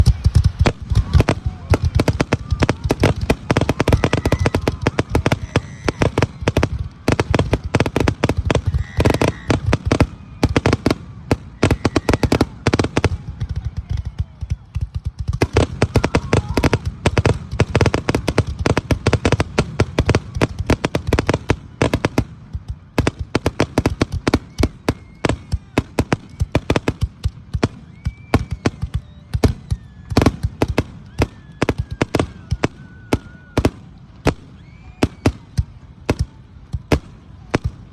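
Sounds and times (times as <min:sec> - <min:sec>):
fireworks bursting and crackling: 0:00.0 - 0:37.9.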